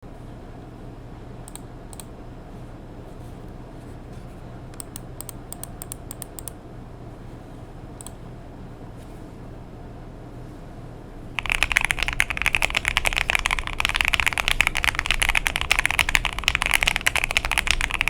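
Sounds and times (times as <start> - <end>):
steady low hum: 0.0 - 18.0
mechanical keyboard keystrokes: 11.4 - 18.0.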